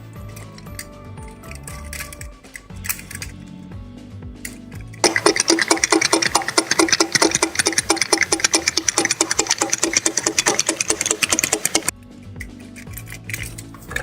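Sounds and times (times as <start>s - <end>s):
rapid mechanical clicking: 5.0s - 11.9s.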